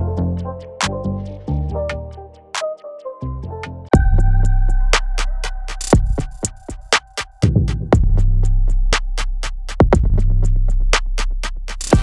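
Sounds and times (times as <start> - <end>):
synth bass notes: 0.0 - 2.6, 3.2 - 12.0
light ticking beat: 4.0 - 10.6.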